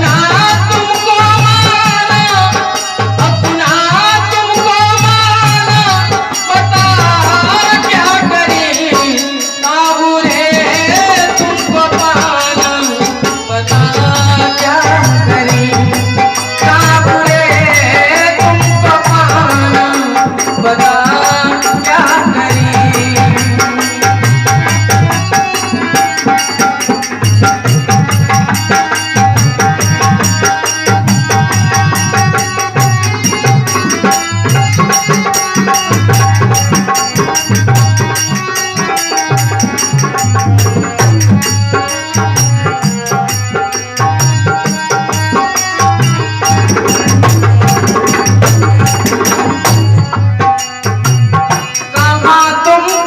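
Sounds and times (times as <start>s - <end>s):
hand drum rhythm: 0.0s - 53.0s
rattle-like percussion: 0.0s - 53.0s.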